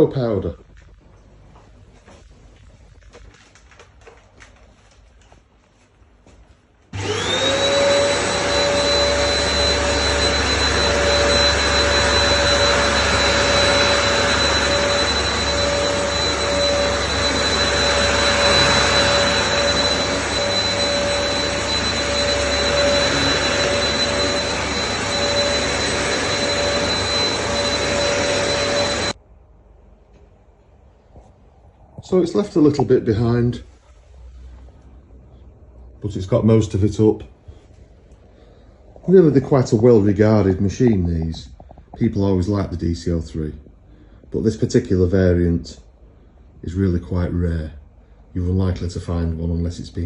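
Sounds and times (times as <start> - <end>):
vacuum cleaner motor whine: 6.9 - 29.2.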